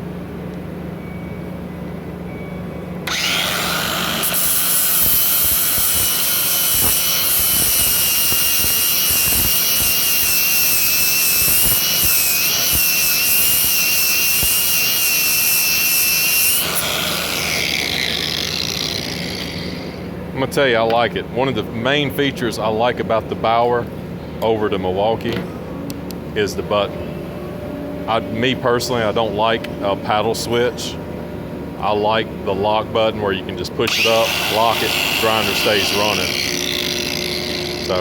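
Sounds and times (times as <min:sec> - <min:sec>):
angle grinder whining: 0:03.0 - 0:20.2, 0:33.9 - 0:38.0.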